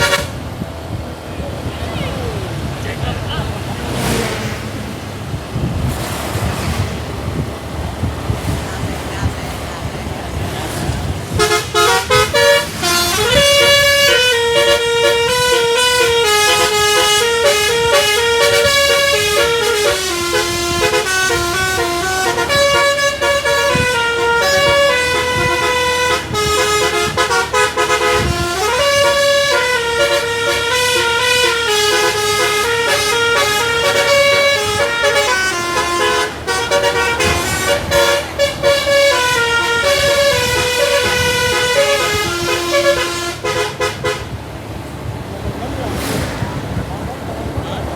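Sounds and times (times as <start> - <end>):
musical air horn melody: 0.0 - 0.4, 11.3 - 44.4.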